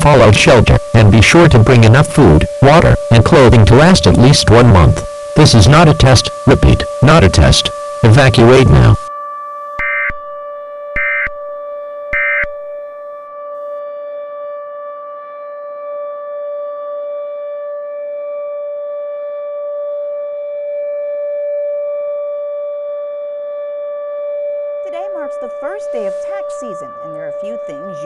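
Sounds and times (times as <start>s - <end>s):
buzzy digital squawks: 0.0s - 9.1s, 9.8s - 11.4s, 12.2s - 12.6s, 24.9s - 28.0s
steady electronic tone: 0.0s - 17.2s.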